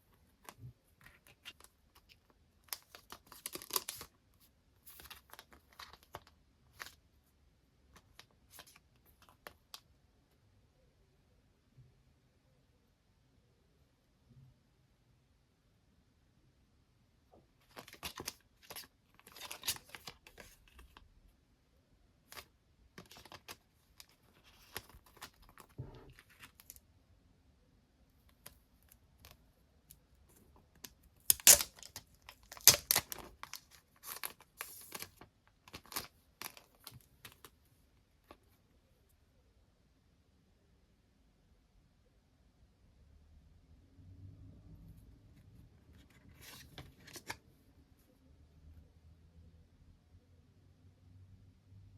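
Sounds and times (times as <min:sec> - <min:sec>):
packaging tearing and crinkling: 0:31.3 - 0:35.1.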